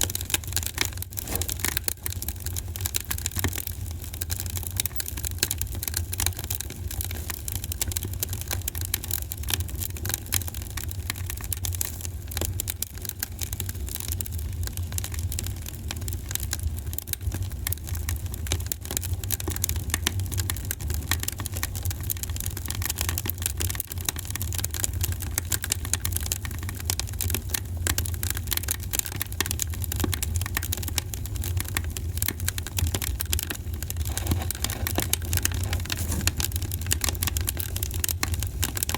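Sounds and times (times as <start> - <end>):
fireplace fire crackling: 0.0 - 38.9.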